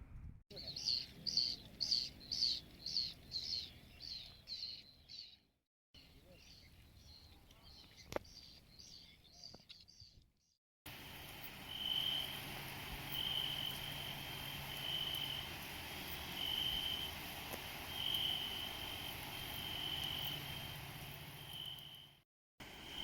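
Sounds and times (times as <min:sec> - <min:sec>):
steady outdoor hiss: 0:00.5 - 0:05.2, 0:06.0 - 0:09.6, 0:10.9 - 0:23.0
insect trilling: 0:11.1 - 0:22.2.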